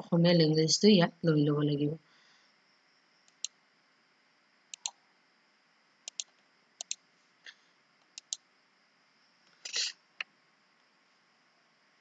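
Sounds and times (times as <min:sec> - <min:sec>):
computer mouse clicking: 0:03.2 - 0:03.6, 0:04.7 - 0:05.0, 0:06.0 - 0:07.0, 0:08.0 - 0:08.4.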